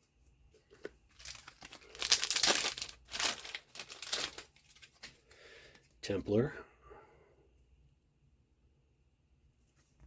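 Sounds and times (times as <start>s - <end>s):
foil wrapper crinkling and tearing: 1.1s - 5.2s.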